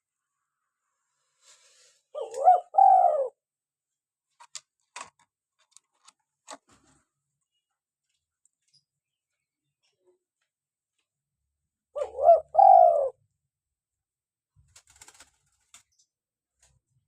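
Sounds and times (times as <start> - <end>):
dove cooing: 2.1 - 3.4, 12.0 - 13.2.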